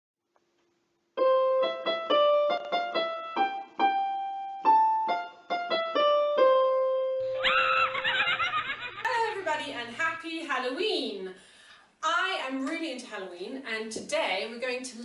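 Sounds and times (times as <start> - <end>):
keyboard melody of single notes: 1.2 - 8.0.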